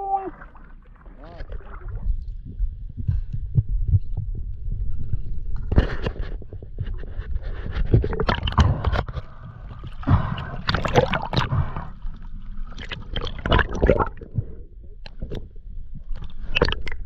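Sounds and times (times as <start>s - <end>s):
sea water sloshing and gurgling: 0.0s - 17.0s
low rumble: 1.2s - 5.8s.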